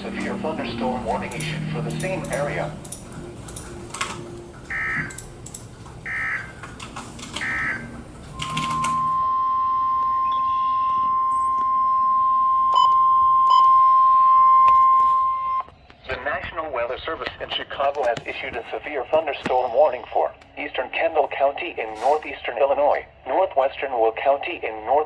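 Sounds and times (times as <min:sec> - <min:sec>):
loud high warning beep: 0:04.7 - 0:05.2, 0:07.4 - 0:15.7.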